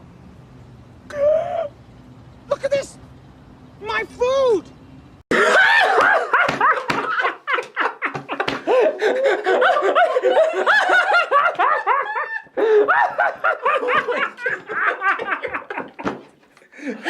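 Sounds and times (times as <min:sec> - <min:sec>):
people laughing: 0:05.3 - 0:17.0.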